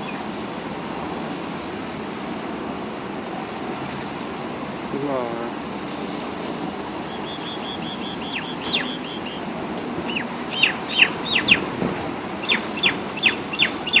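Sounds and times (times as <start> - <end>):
birds chirping: 7.0 - 9.5, 10.1 - 11.7, 12.4 - 14.0.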